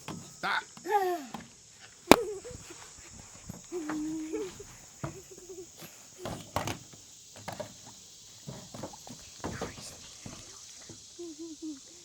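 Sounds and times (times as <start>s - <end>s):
footsteps or light knocks: 1.3s - 11.1s
wordless voice hum: 11.2s - 12.0s.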